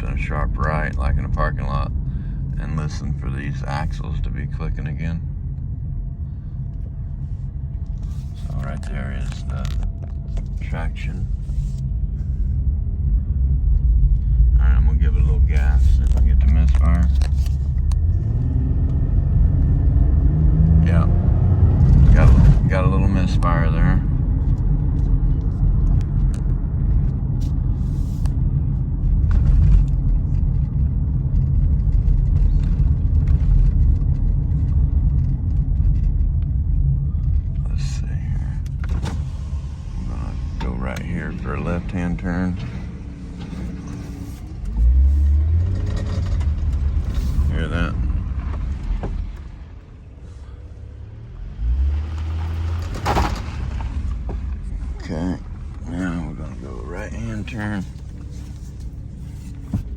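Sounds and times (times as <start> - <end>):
road and engine rumble in car: 0.0 - 59.9.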